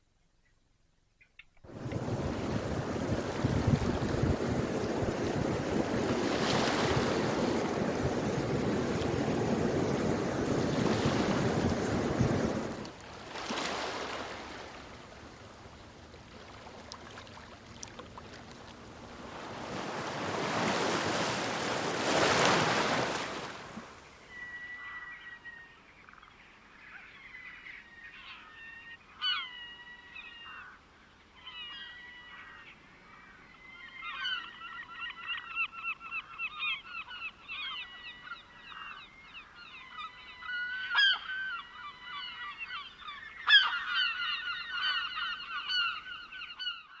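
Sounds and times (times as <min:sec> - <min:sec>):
seagulls calling: 0:01.7 - 0:25.4, 0:39.8 - 0:47.0.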